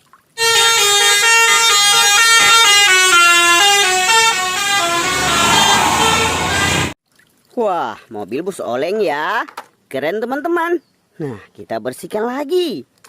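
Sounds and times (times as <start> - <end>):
multi-tone bus horn tune: 0.4 - 7.0
rushing noise: 4.2 - 7.0.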